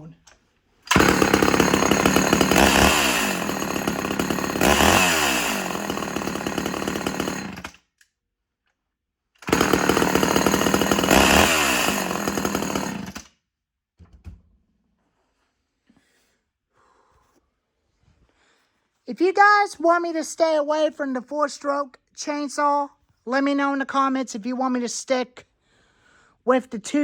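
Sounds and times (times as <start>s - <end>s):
chainsaw engine revving: 0.9s - 7.7s, 9.4s - 13.3s.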